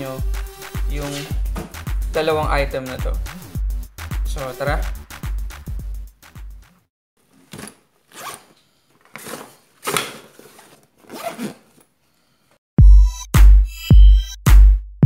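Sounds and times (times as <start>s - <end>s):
electronic music with heavy bass: 0.0s - 6.6s.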